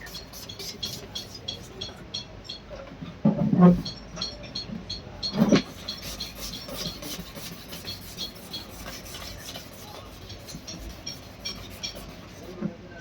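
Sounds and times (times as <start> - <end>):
hand rubbing plastic lens: 5.5 - 12.6.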